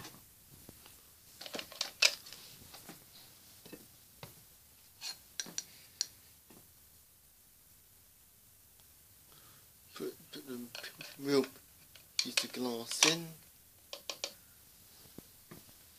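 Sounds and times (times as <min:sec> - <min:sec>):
small plastic parts clicking: 0:13.9 - 0:14.4.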